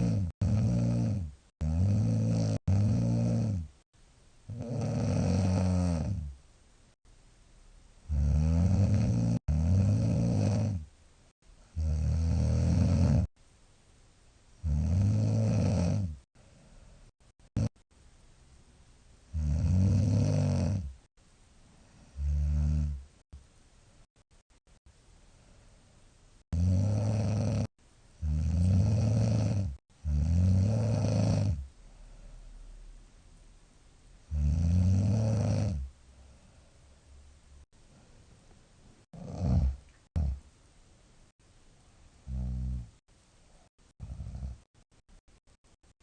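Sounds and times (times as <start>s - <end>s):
woman snoring: 0.0s - 3.8s, 4.5s - 6.4s, 8.1s - 10.9s, 11.7s - 13.3s, 14.6s - 16.3s, 17.5s - 17.8s, 19.3s - 21.0s, 22.1s - 23.0s, 26.5s - 31.6s, 34.3s - 35.9s, 39.1s - 40.4s, 42.2s - 43.0s, 44.0s - 44.7s.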